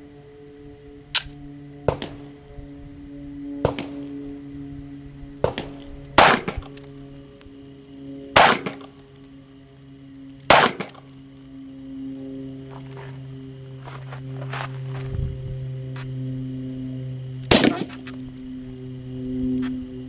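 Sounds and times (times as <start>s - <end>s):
handgun shots: 5.5s - 6.7s, 8.4s - 8.9s, 10.5s - 11.0s, 17.5s - 18.0s.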